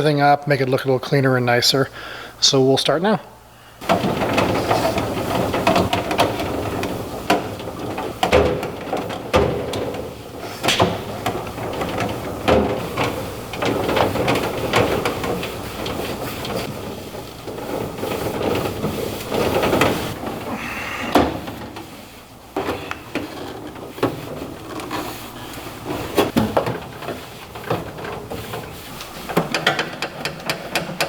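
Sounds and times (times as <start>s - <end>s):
cloth rubbing on steel: 15.6s - 26.4s.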